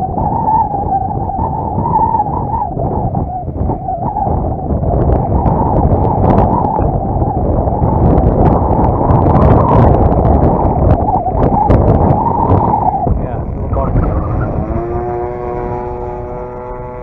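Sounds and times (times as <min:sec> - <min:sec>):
wind buffeting microphone: 0:00.0 - 0:17.0
model plane engine droning: 0:12.6 - 0:17.0.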